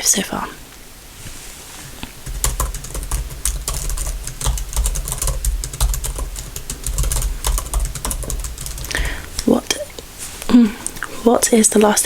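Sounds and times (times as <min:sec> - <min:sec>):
fast keyboard typing: 0:02.2 - 0:09.7.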